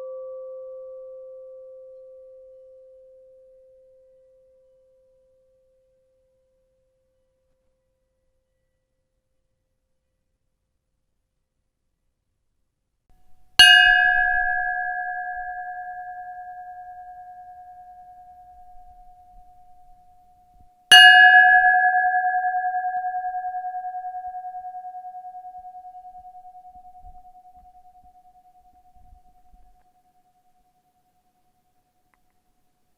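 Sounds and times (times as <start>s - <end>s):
ship's bell ringing: 13.6s - 19.2s, 20.9s - 28.2s.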